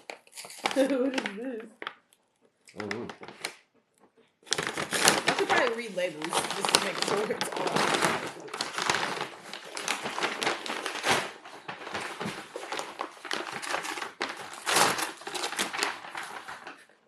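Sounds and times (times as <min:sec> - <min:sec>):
packaging crinkling and rustling: 0:00.0 - 0:02.1, 0:02.7 - 0:03.6, 0:04.4 - 0:17.0.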